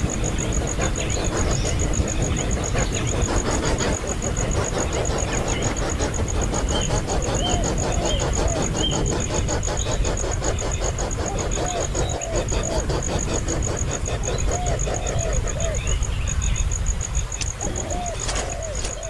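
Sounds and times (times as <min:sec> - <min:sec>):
cricket chirping: 0:00.0 - 0:19.0.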